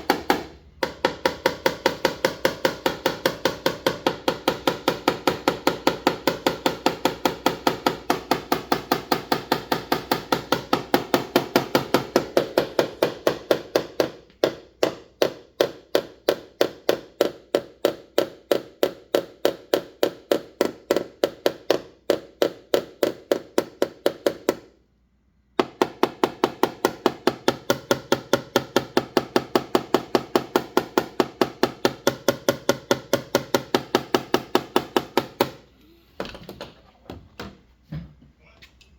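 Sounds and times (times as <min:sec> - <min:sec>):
hammer tapping on car panel: 0:00.0 - 0:24.7, 0:25.6 - 0:35.6.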